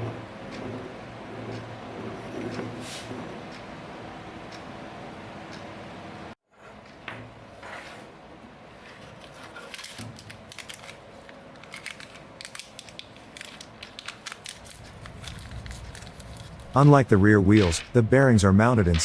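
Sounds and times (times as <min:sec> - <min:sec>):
plastic parts clicking and scraping: 0:11.6 - 0:16.8.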